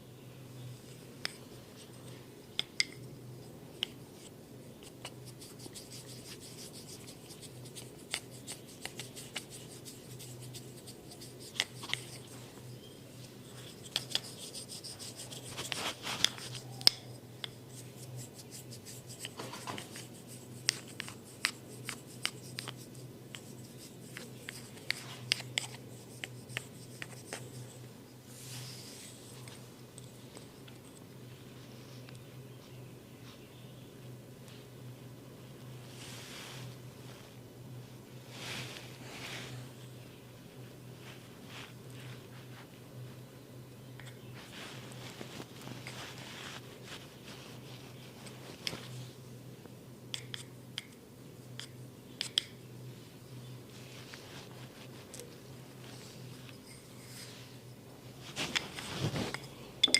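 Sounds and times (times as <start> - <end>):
hands rubbing skin and hair: 4.8 - 30.5, 44.0 - 49.1, 53.7 - 59.5.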